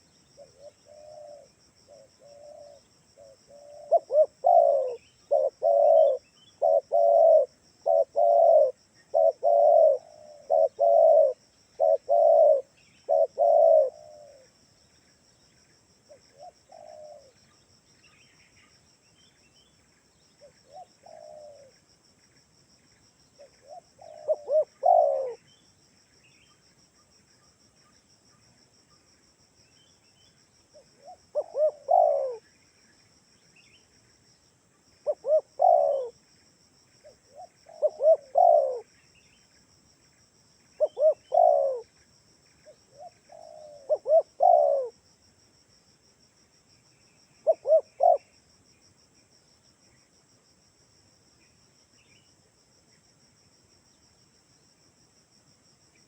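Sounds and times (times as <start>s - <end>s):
dove cooing: 0.0s - 14.5s, 16.1s - 17.4s, 20.4s - 21.7s, 23.4s - 25.4s, 30.8s - 32.4s, 35.0s - 36.2s, 37.0s - 38.9s, 40.8s - 41.9s, 42.6s - 45.0s, 47.4s - 48.3s.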